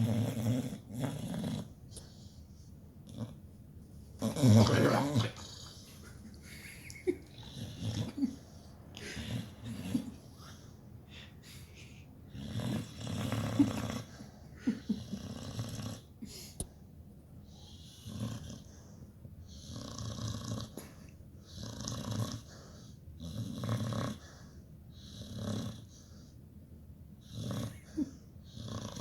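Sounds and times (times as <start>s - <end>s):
dog snoring: 0.0s - 1.8s, 3.0s - 3.4s, 4.2s - 5.8s, 7.4s - 8.4s, 9.0s - 10.2s, 12.3s - 16.1s, 17.5s - 18.9s, 19.5s - 20.8s, 21.4s - 26.3s, 27.2s - 29.0s.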